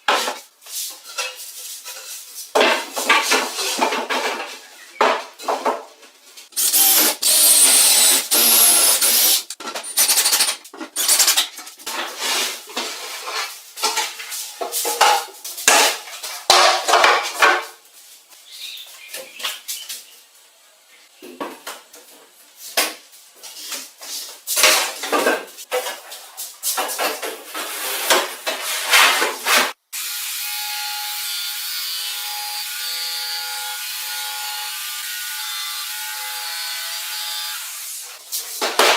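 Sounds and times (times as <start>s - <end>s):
power tool whining: 6.6s - 10.4s.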